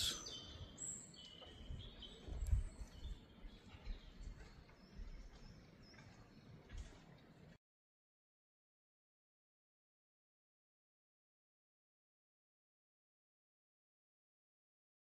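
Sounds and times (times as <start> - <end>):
small birds chirping: 0.0 - 7.5.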